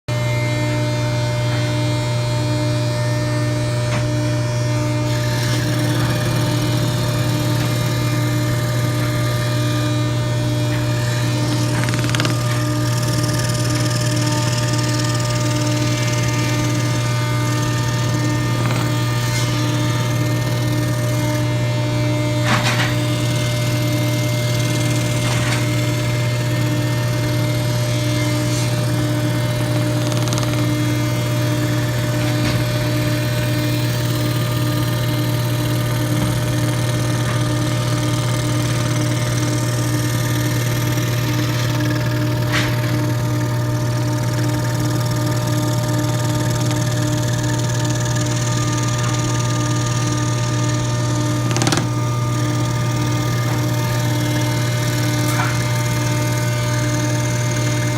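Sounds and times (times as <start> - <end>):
scroll saw running: 1.6 - 57.9.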